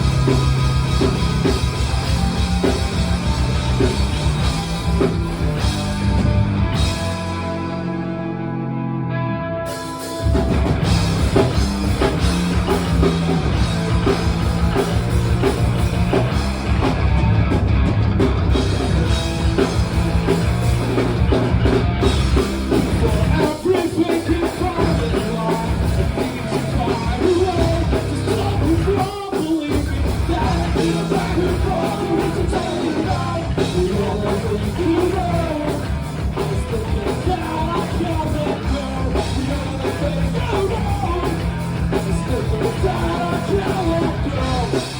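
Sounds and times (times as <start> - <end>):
shouted punk singing: 0.0 - 7.7, 10.2 - 44.9
rock band playing loudly: 0.0 - 44.9.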